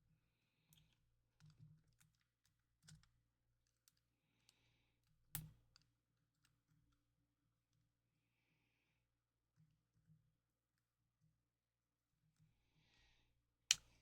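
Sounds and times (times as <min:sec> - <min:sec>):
small plastic parts clicking: 0:00.7 - 0:07.0.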